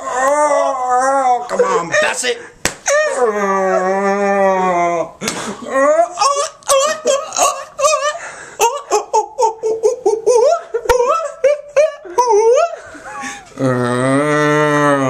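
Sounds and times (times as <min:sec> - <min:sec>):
child laughing: 0:05.7 - 0:13.4.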